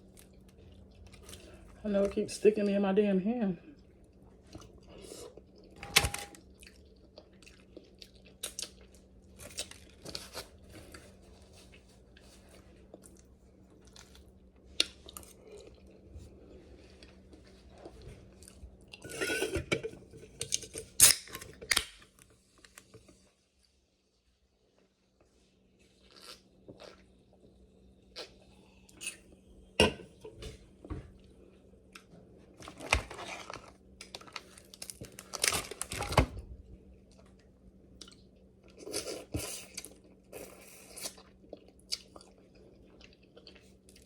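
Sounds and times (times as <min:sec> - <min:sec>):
chewing: 0:06.5 - 0:16.0, 0:38.0 - 0:44.0.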